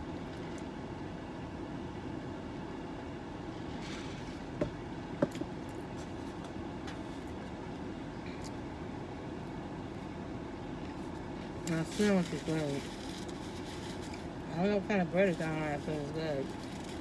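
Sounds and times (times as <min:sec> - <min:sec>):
car engine and air conditioning hum: 0:00.0 - 0:17.0.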